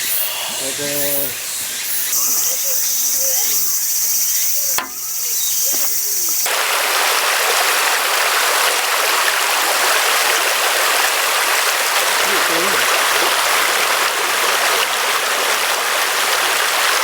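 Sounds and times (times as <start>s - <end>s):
short chirping calls: 0.0s - 6.5s
steady high hiss: 0.0s - 6.5s
river rushing: 6.5s - 17.0s.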